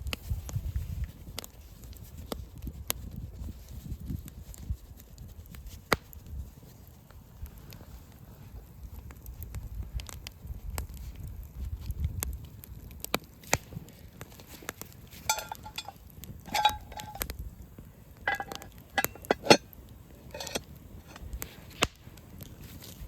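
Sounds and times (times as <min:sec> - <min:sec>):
metal cooking gear clinking: 0:15.2 - 0:17.2, 0:18.2 - 0:19.7, 0:20.3 - 0:21.2
sharp clicks and knocks: 0:18.3 - 0:19.6.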